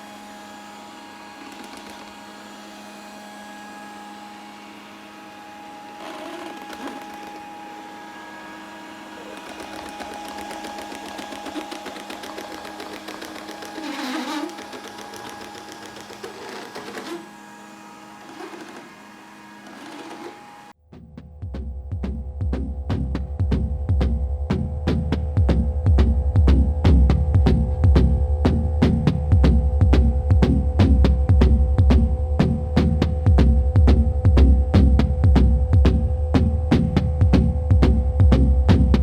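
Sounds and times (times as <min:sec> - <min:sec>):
robot vacuum motor hum: 0:00.4 - 0:20.7
rapid even ticking: 0:09.3 - 0:17.0.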